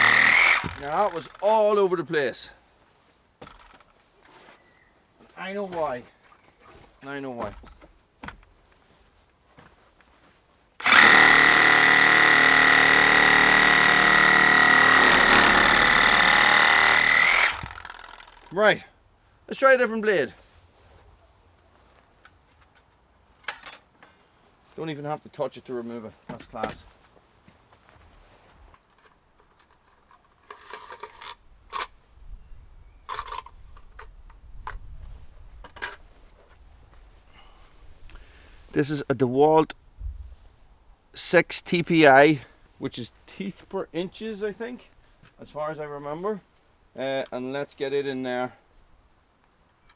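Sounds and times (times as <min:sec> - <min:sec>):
scraping rattles: 0:00.0 - 0:01.6
reciprocating saw whining: 0:00.0 - 0:01.7, 0:10.8 - 0:18.5.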